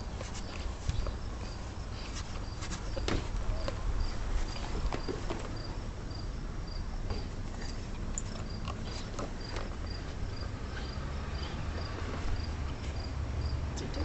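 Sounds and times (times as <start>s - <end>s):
faint clicks and rustles: 0.0s - 5.7s
cricket chirping: 0.0s - 14.0s.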